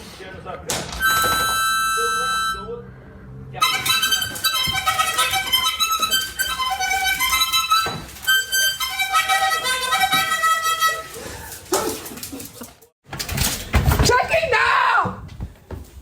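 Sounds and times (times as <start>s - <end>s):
reedy wind instrument tune: 1.0s - 2.9s, 3.6s - 11.6s.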